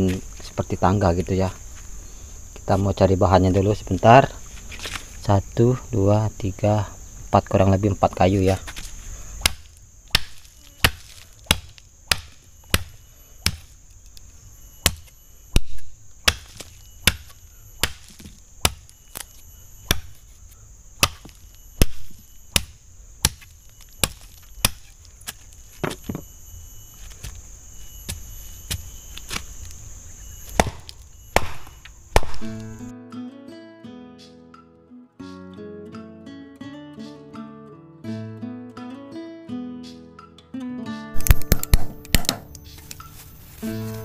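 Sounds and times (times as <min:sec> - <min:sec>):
high insect buzz: 0:00.0 - 0:40.3, 0:40.9 - 0:44.0
wood chopping strikes: 0:08.7 - 0:13.8, 0:14.8 - 0:20.4, 0:21.0 - 0:26.4, 0:27.0 - 0:29.8, 0:30.4 - 0:32.8, 0:41.2 - 0:43.2.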